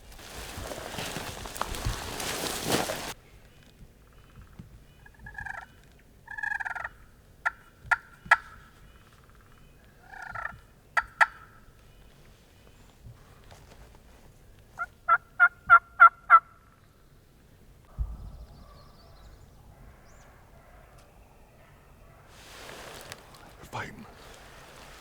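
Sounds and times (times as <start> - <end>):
sharp short turkey calls: 4.9 - 12.0, 14.8 - 16.7
wild turkeys gobbling: 5.0 - 11.7, 14.8 - 16.6.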